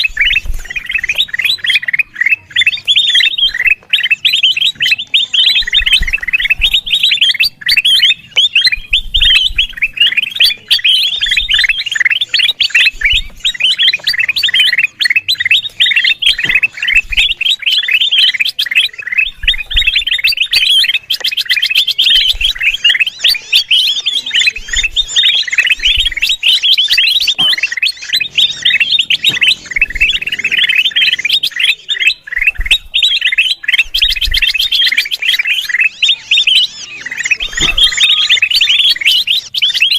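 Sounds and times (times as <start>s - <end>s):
bulbul rapid high chirps: 0.0s - 39.9s.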